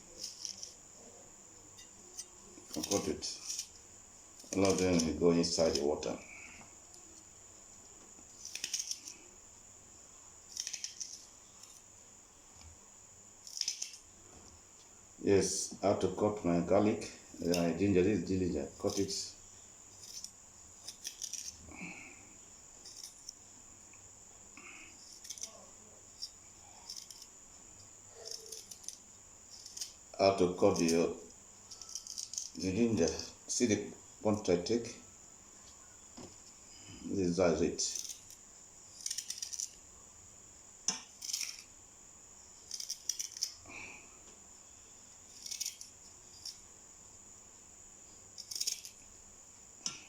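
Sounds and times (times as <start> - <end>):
knife cutting ginger: 0.1 - 0.8, 1.8 - 3.8, 4.4 - 6.2, 8.3 - 9.2, 10.5 - 11.8, 13.4 - 14.1, 18.7 - 19.2, 20.0 - 21.6, 22.8 - 23.4, 25.0 - 27.4, 28.2 - 33.3, 37.8 - 39.8, 42.7 - 43.6, 45.3 - 46.6
knife cutting through ginger: 2.6 - 3.8, 4.4 - 6.1, 8.4 - 9.2, 10.5 - 11.8, 25.0 - 25.6, 28.2 - 33.2.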